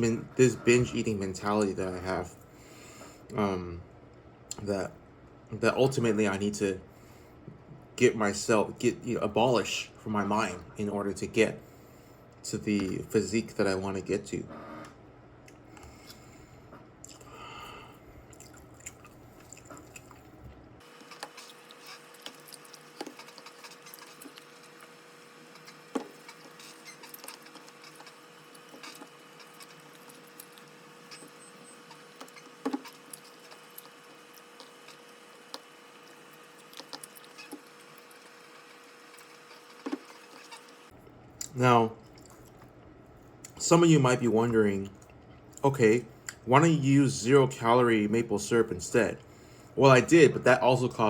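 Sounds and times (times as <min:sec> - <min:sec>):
person chewing food: 0:17.0 - 0:40.7, 0:41.4 - 0:43.6.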